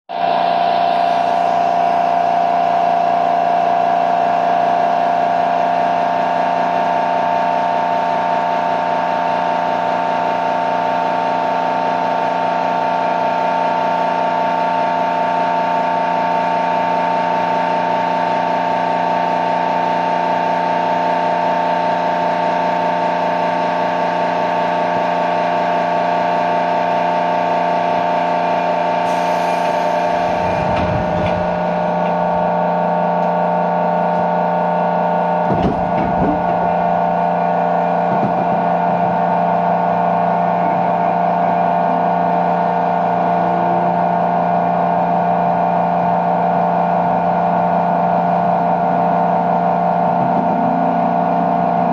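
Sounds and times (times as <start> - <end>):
motor-generator whine: 0.1 - 51.9
hiss: 29.0 - 30.6.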